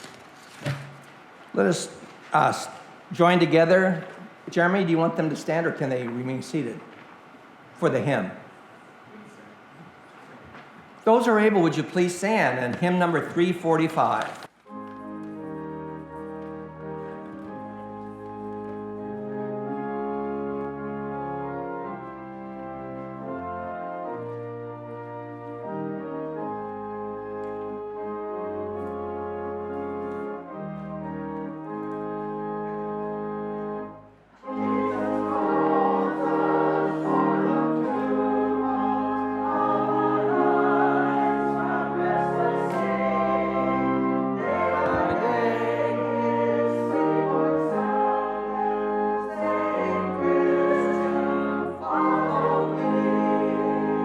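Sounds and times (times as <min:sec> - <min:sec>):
instrumental held chords: 0:13.2 - 0:54.0
congregation singing a hymn: 0:34.4 - 0:54.0.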